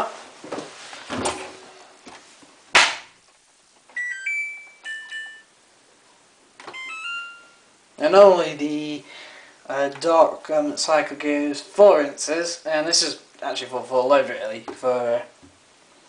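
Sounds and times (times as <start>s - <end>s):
washing machine electronic chimes: 4.0s - 5.5s, 6.7s - 7.7s.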